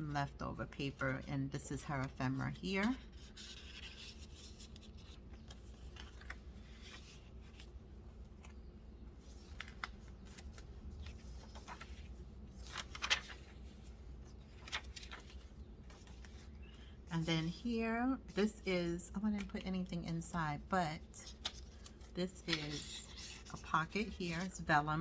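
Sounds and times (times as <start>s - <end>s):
paper rustling and tapping: 9.2s - 16.8s.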